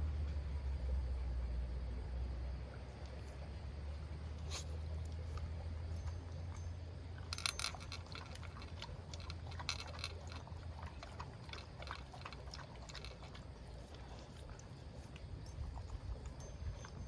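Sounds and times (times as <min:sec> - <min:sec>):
low steady hum: 0:00.0 - 0:17.0
pet crunching food: 0:04.3 - 0:17.0.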